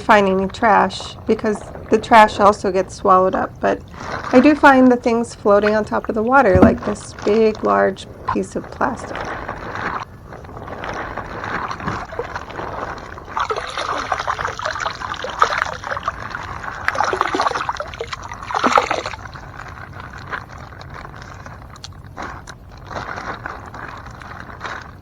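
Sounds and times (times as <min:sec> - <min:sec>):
water sloshing and trickling: 0:00.0 - 0:25.0
plastic knocks and rustles: 0:05.6 - 0:07.8.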